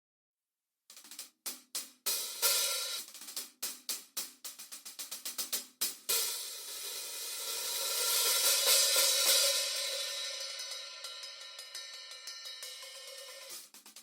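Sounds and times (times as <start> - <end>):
cymbals being played: 6.1 - 13.8.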